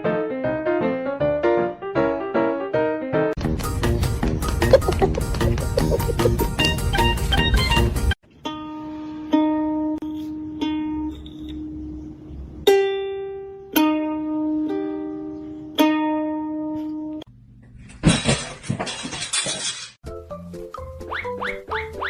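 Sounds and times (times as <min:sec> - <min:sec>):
plucked string notes: 0:04.4 - 0:12.0, 0:12.6 - 0:17.2.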